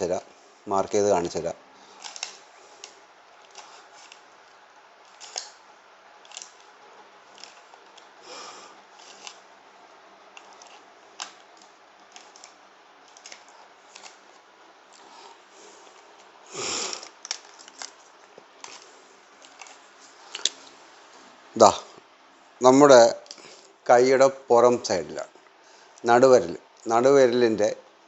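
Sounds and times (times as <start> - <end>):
small objects rustling: 6.2 - 9.5, 10.3 - 15.1, 15.8 - 21.3.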